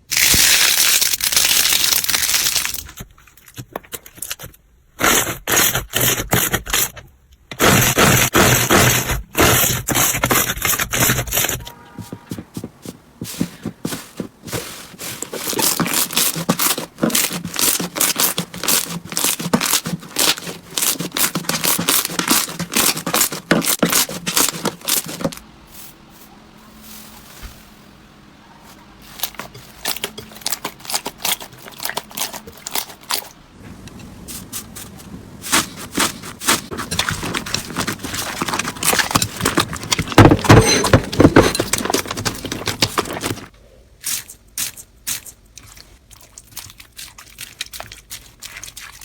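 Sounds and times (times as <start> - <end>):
slime crackling and popping: 0.0 - 3.0, 15.4 - 25.1
slime squishing: 7.6 - 25.8, 34.2 - 40.3, 41.2 - 49.0.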